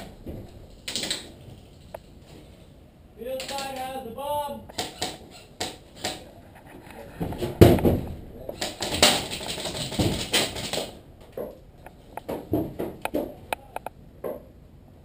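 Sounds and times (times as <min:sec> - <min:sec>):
irregular knocks and clicks: 0:07.2 - 0:14.5.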